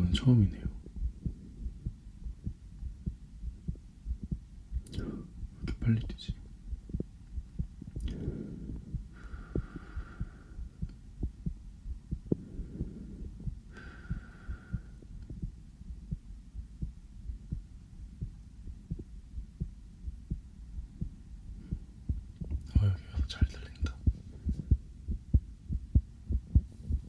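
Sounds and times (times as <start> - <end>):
fast heartbeat thumps: 0.0 - 27.0
soft hiss: 0.0 - 27.0.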